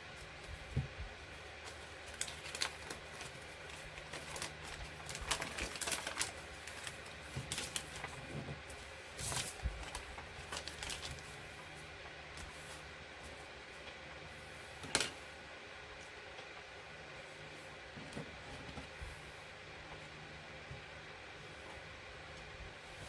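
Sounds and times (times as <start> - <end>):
paper crinkling: 0.2 - 13.4
plastic items clicking: 4.0 - 8.2.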